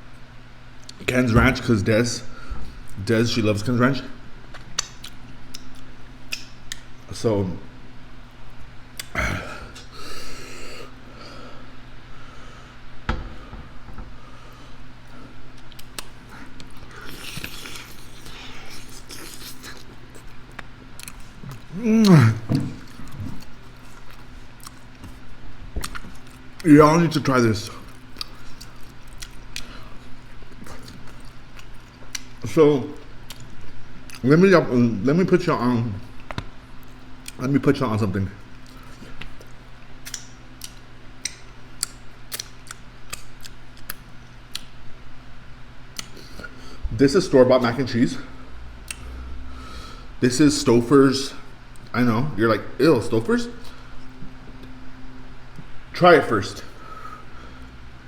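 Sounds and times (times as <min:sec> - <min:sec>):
faint hum: 0:00.0 - 0:58.0
chewing and lip-smacking: 0:04.5 - 0:07.0, 0:15.5 - 0:26.7, 0:27.7 - 0:32.4, 0:33.0 - 0:34.2, 0:36.2 - 0:37.4, 0:38.5 - 0:44.8, 0:45.9 - 0:46.6, 0:48.8 - 0:49.1.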